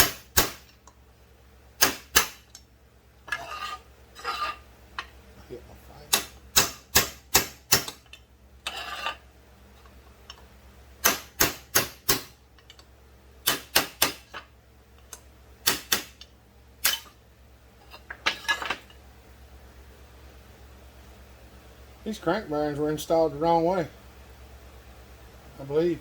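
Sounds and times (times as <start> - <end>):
hammer striking metal punch: 0.0 - 0.8, 1.8 - 2.6, 6.1 - 8.2, 11.0 - 12.4, 13.4 - 14.4, 15.6 - 16.2, 16.8 - 17.1.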